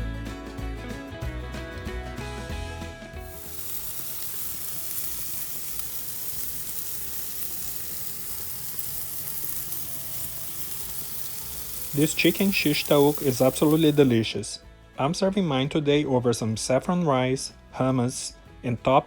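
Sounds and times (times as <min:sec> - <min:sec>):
chicken sizzling on a grill: 0:03.2 - 0:14.3.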